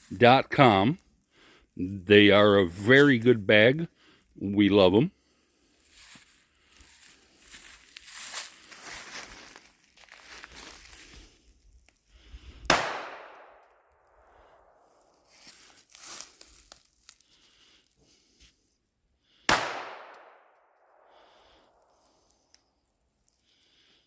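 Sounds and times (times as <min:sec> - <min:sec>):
gunshots with echo: 0:12.7 - 0:13.6, 0:19.5 - 0:20.5.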